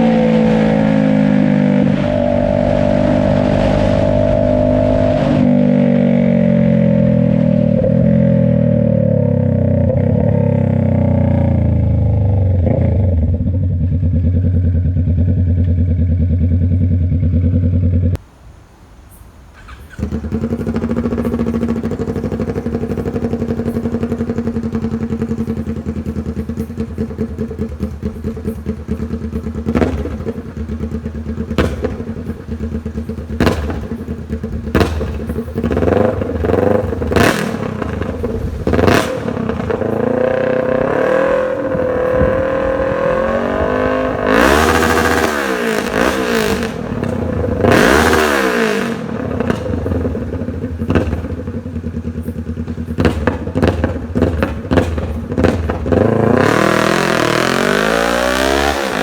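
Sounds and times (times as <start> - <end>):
exhaust cracks: 0.0 - 18.3, 19.5 - 59.0
motorcycle engine revving: 0.0 - 18.3, 19.6 - 59.0.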